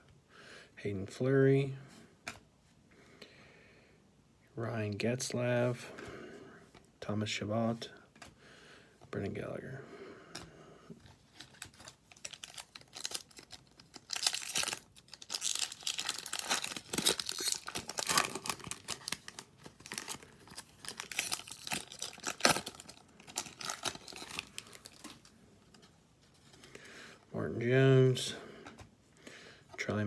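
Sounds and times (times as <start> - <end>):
wrapper tearing and crinkling: 11.3 - 25.3.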